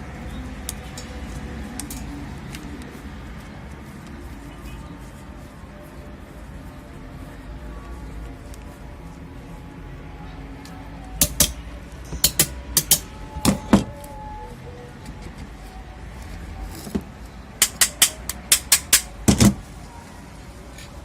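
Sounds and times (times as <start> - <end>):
metal parts and tools clicking: 0.6 - 2.9, 10.6 - 14.2, 17.6 - 19.6.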